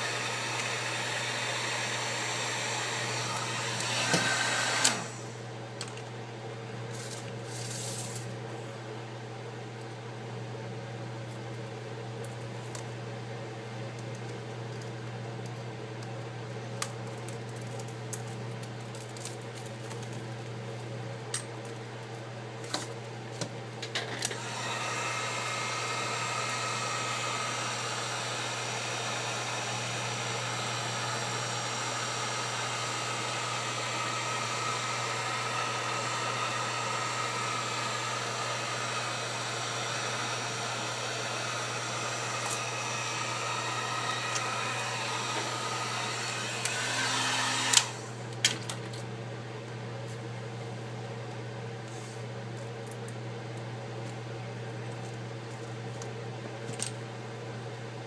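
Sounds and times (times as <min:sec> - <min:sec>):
heat gun blowing: 0:00.0 - 0:05.4, 0:24.3 - 0:48.2.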